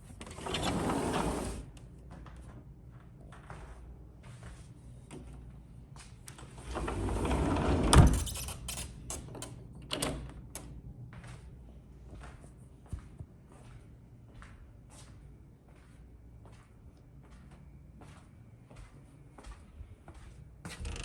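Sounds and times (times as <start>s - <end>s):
door sliding shut with thud: 6.7s - 8.3s.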